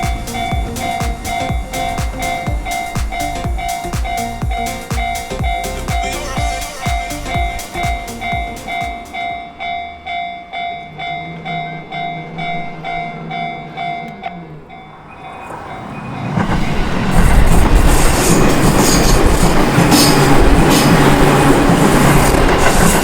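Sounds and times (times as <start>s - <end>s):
railway crossing bell dinging: 0.0s - 17.6s
electric train passing: 0.0s - 23.0s.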